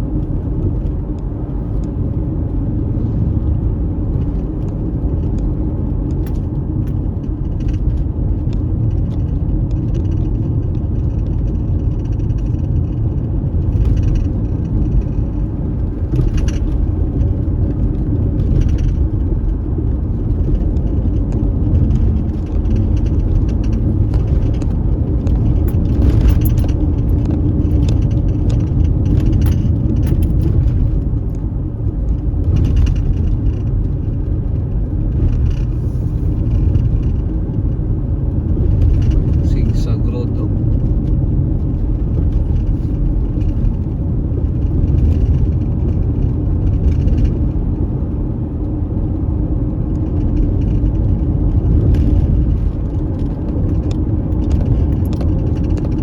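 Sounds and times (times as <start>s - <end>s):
tyres and engine rumble: 0.0s - 56.0s
rattles and knocks: 4.1s - 39.9s, 40.5s - 47.5s.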